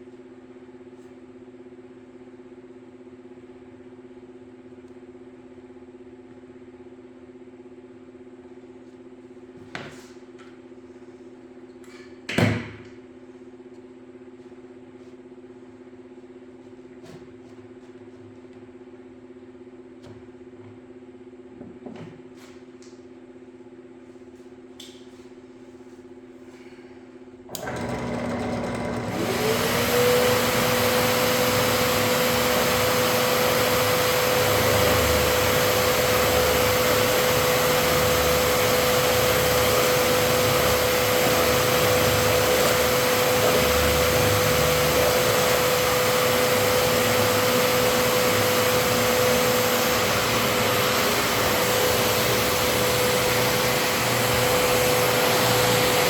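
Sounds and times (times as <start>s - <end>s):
vacuum motor whine: 27.5s - 56.0s.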